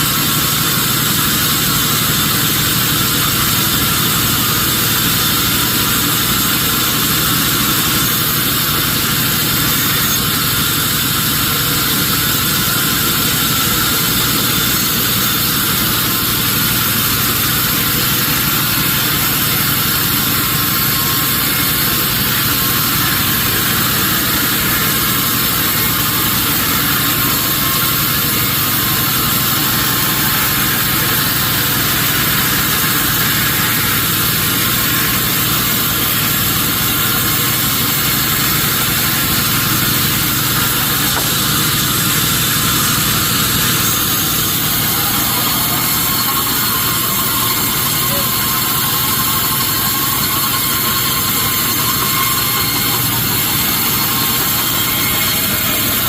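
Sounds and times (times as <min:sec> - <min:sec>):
sawmill machinery drone: 0:00.0 - 0:56.0.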